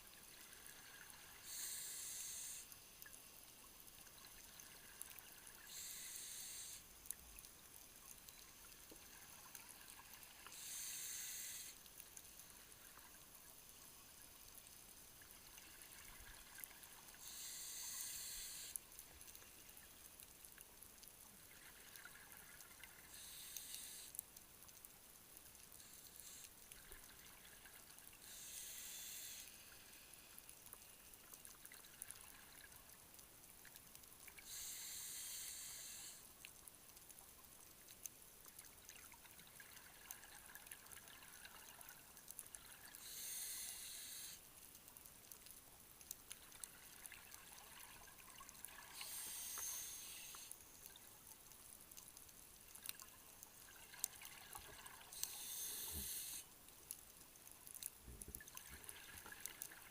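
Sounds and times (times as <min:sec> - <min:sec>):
faint scattered clicks: 0:00.0 - 0:59.9
diver breathing through regulator: 0:01.4 - 0:02.7, 0:05.7 - 0:06.8, 0:10.5 - 0:11.8, 0:17.2 - 0:18.8, 0:23.1 - 0:24.2, 0:28.2 - 0:30.2, 0:34.4 - 0:36.2, 0:43.0 - 0:44.4, 0:49.0 - 0:50.5, 0:55.2 - 0:56.5.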